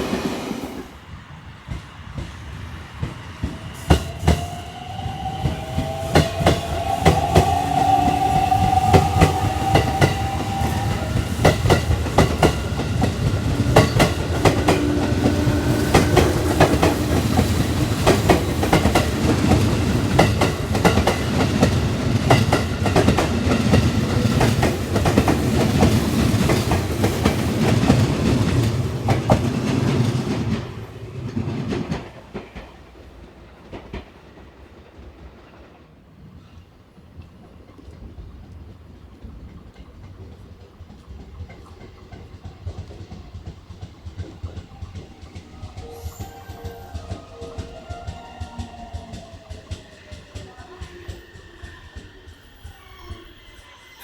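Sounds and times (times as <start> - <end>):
train whine rising in pitch: 2.5 - 22.1, 44.1 - 54.0
train wheels clacking over rail joints: 5.4 - 34.3.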